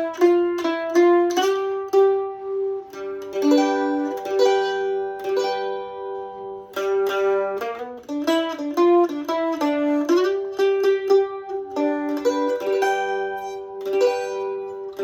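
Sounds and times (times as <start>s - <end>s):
mandolin playing blues: 0.0s - 15.0s.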